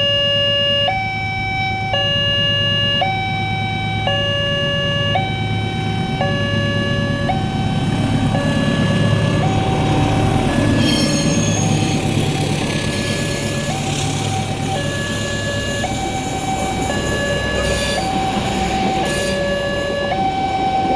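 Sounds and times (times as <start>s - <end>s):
two-tone warning siren: 0.0s - 20.9s
rushing noise with high squeals: 8.7s - 20.9s.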